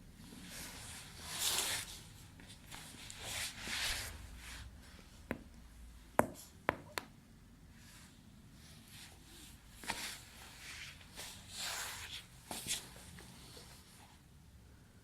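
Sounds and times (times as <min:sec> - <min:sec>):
soft rustling hisses: 0:00.2 - 0:05.3, 0:07.7 - 0:14.3.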